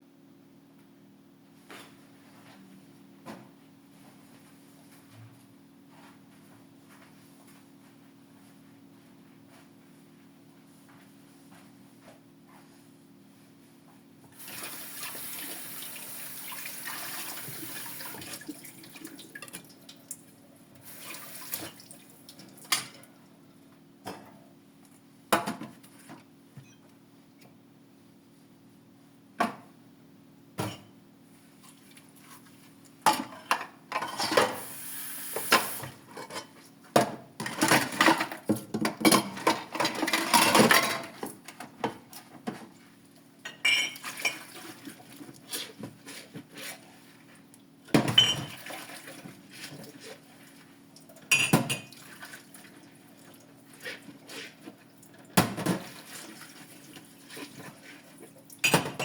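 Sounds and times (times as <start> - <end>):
water running in sink: 14.4 - 20.2.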